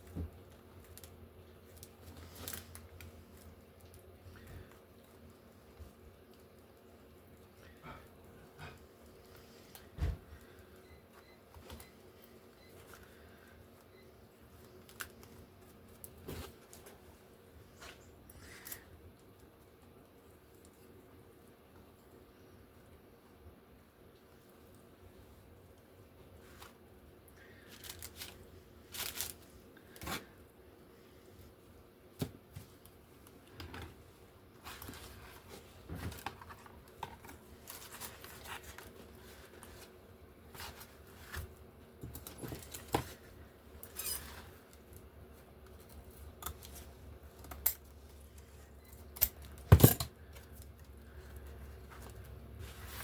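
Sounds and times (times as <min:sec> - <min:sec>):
paper and craft tools on tabletop: 0:25.1 - 0:53.0.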